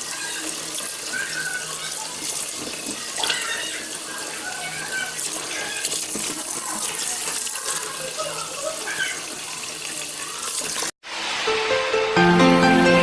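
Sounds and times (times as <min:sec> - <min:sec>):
soft instrumental music: 0:11.3 - 0:13.0.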